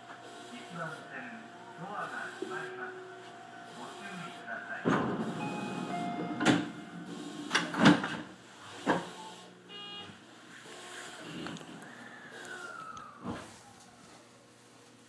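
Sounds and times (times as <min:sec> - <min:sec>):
faint electric motor tones: 0:00.0 - 0:15.0
train running rumble: 0:04.7 - 0:08.4.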